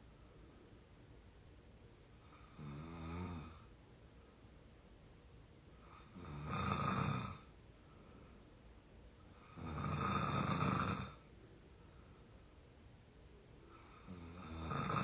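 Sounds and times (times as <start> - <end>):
person snoring: 2.4 - 3.7, 5.9 - 7.5, 9.4 - 11.2, 13.8 - 15.0.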